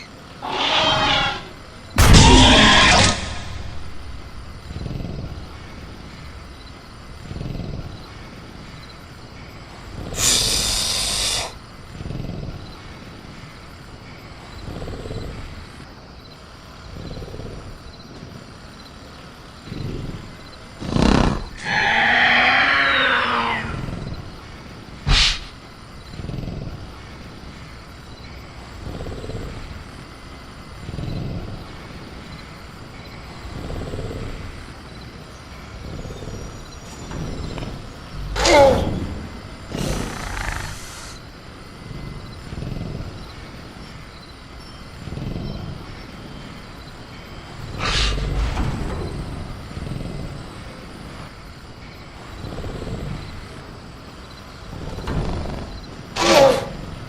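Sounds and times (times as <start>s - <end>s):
hissing noise: 0.0s - 12.4s, 24.9s - 26.9s, 36.9s - 44.1s
faint cricket chirping: 0.0s - 57.0s
creature screeching call: 0.4s - 3.8s, 21.6s - 23.8s, 38.3s - 39.0s, 56.2s - 56.7s
metal cage bang: 2.0s - 5.4s
low growling breaths: 3.2s - 21.7s, 23.6s - 57.0s.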